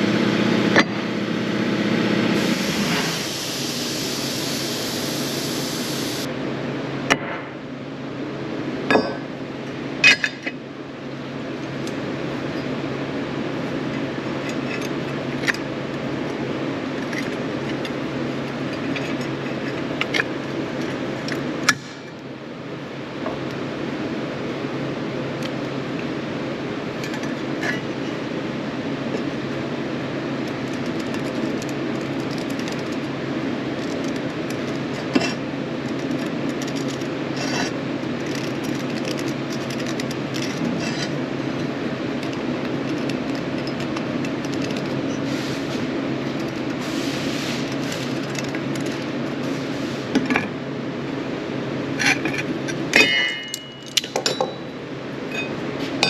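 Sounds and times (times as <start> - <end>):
mechanical running noise: 0.0 - 6.3, 29.0 - 49.9.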